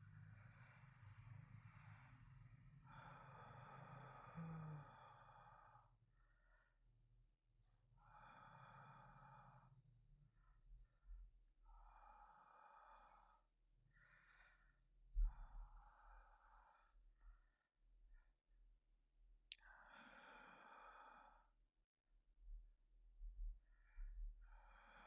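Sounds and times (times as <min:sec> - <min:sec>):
man breathing heavily: 0:00.0 - 0:06.8.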